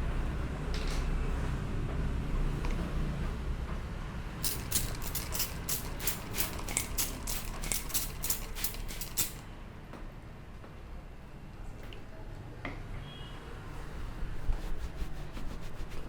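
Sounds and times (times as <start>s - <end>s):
hands rubbing hair and scalp: 14.0s - 16.0s.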